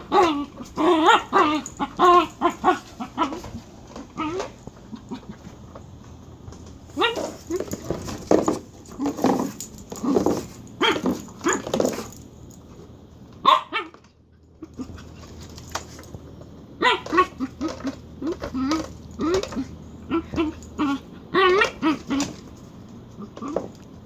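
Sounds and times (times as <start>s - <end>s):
dog making odd bark-like sounds: 16.8s - 22.4s.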